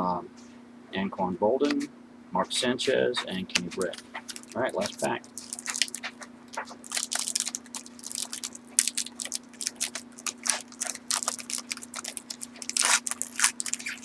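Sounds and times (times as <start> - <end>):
foil wrapper tearing and crinkling: 3.5 - 14.0.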